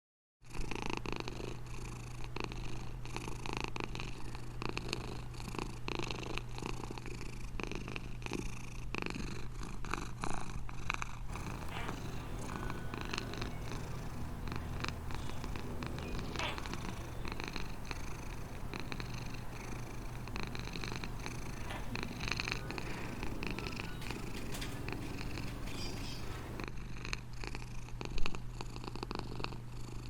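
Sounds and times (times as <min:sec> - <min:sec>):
cat purring: 0:11.3 - 0:26.6
low steady hum: 0:11.3 - 0:26.6.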